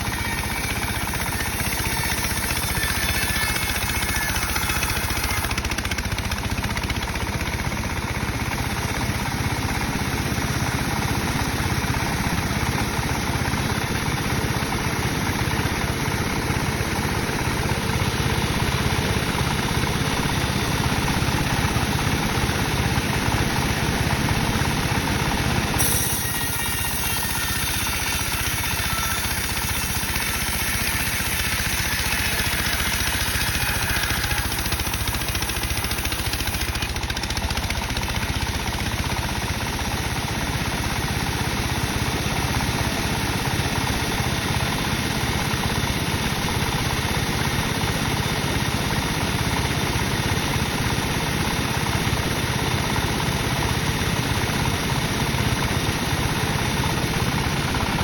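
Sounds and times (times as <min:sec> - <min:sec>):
sawmill saw cutting timber: 0:00.0 - 0:58.0.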